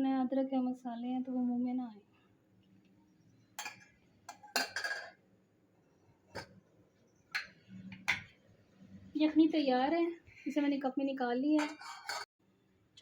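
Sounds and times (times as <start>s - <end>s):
kitchenware clinking and knocking: 3.6s - 5.2s, 6.3s - 6.6s, 7.3s - 8.4s, 11.5s - 12.3s.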